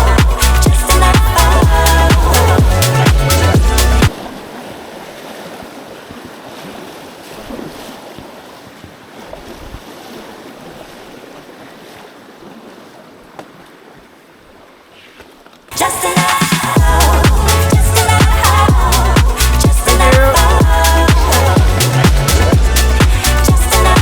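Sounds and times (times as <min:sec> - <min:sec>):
steady rushing noise: 0:00.0 - 0:04.2, 0:15.8 - 0:24.0.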